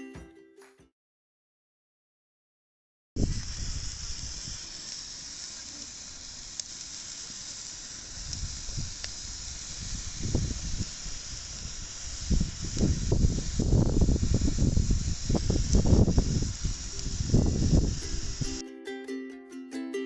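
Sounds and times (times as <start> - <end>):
rain falling: 3.2 - 18.6.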